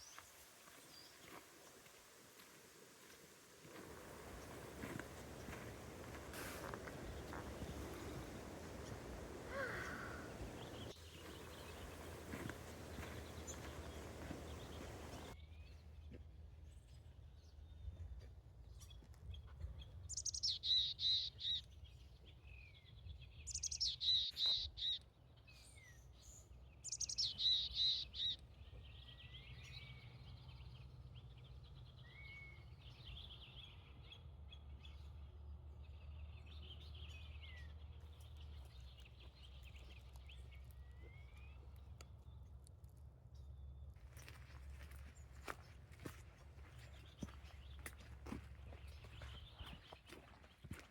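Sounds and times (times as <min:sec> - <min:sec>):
faint bird chirps: 0:03.8 - 0:15.4.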